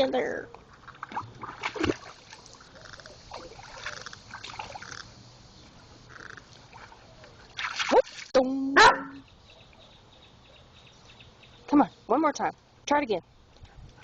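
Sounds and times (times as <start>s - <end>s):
water splashing: 0.7s - 5.2s, 6.5s - 8.4s
dog digging in water barrel: 0.8s - 2.6s.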